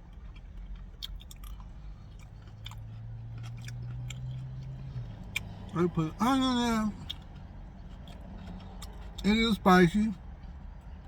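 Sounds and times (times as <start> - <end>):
person chewing crispy chicken: 0.0 - 5.8, 6.9 - 9.4.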